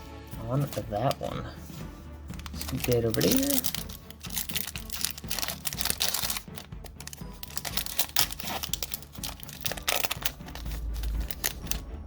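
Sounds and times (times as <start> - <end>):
foil wrapper crinkling and tearing: 2.3 - 11.9.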